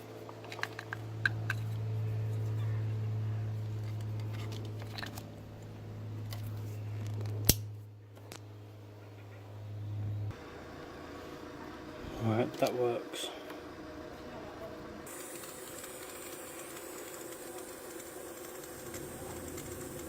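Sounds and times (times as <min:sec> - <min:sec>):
motor humming: 0:09.8 - 0:20.0.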